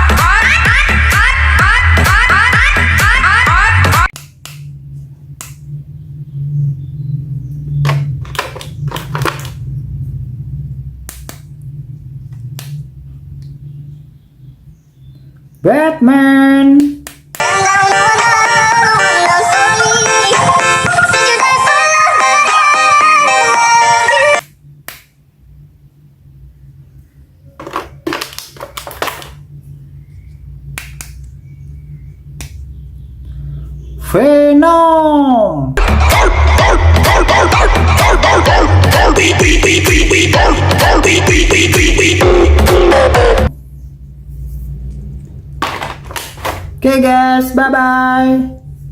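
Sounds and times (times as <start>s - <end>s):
steady low hum: 0.0s - 15.7s, 24.3s - 28.1s, 29.4s - 34.6s, 35.4s - 48.9s
plastic clicks: 7.8s - 9.6s.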